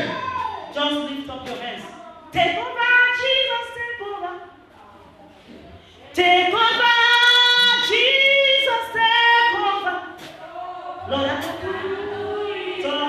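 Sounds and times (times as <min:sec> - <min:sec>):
woman singing unaccompanied: 0:06.0 - 0:13.0.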